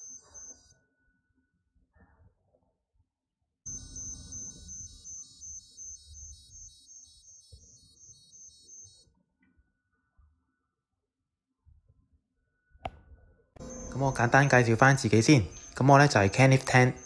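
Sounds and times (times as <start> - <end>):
high pulsing electronic beeps: 0.0 - 0.8, 3.7 - 9.1, 13.6 - 17.0.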